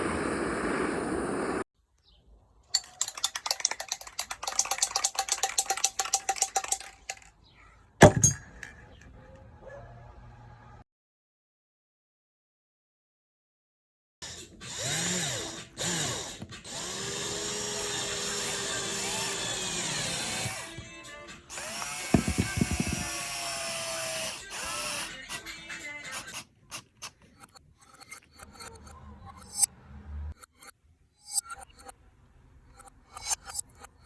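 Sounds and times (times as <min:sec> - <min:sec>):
small clicks and knocks: 0:02.8 - 0:07.4, 0:21.8 - 0:23.1
power drill running: 0:14.2 - 0:20.8, 0:21.5 - 0:25.4.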